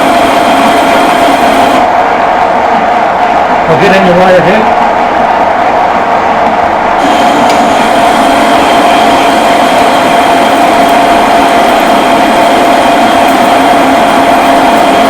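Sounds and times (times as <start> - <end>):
metal lathe cutting steel: 0.0 - 2.2, 7.0 - 15.0.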